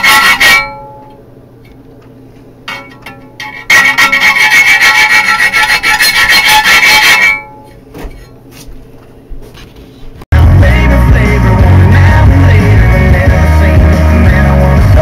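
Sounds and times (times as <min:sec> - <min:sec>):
power tool grinding: 0:03.4 - 0:07.3.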